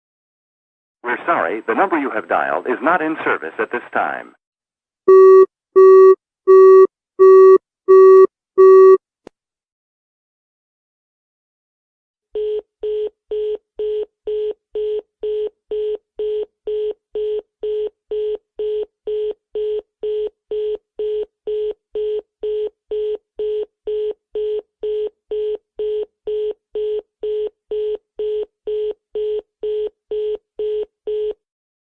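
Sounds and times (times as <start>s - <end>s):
telephone busy tone: 5.1s - 9.0s, 12.4s - 31.4s.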